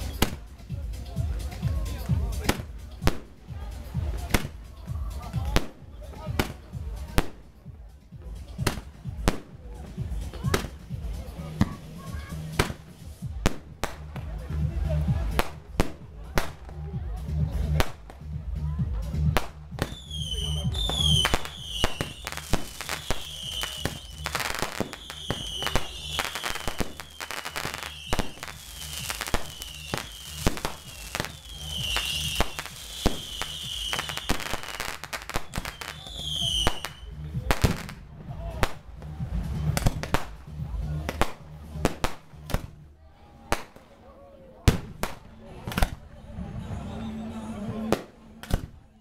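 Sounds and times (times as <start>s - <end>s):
music with heavy bass: 0.0s - 43.6s
fireworks bangs and crackles: 0.0s - 44.0s, 44.6s - 46.9s, 47.8s - 48.8s
falling firework whistle: 22.9s - 28.6s, 29.3s - 34.6s.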